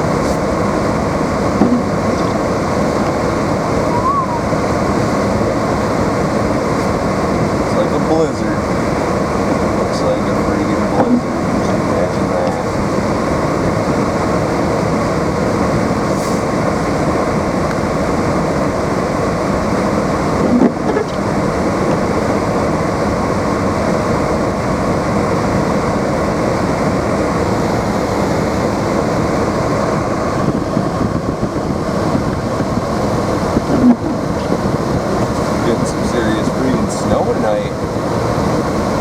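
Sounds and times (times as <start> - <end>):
car road and engine noise: 0.0 - 39.0.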